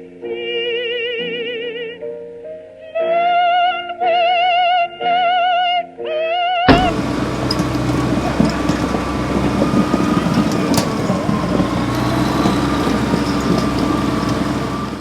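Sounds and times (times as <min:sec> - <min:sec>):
diesel engine running: 0:06.7 - 0:15.0.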